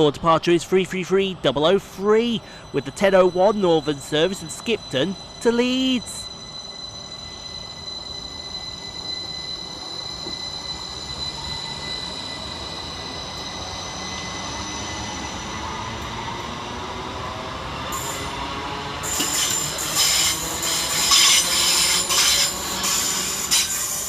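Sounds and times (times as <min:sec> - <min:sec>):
train traction whine: 0:00.0 - 0:24.0
wheels rumbling on rail: 0:06.3 - 0:24.0.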